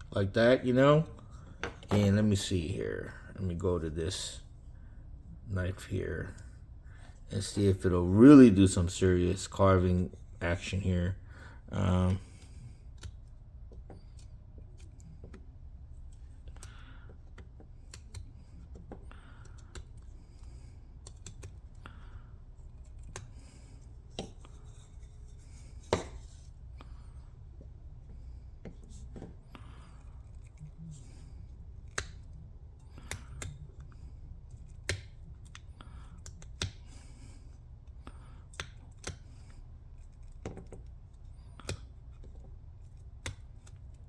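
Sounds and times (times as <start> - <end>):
knife carving wood: 11.8 - 44.0
wood snapping: 31.9 - 32.2, 34.8 - 35.6, 36.2 - 36.8.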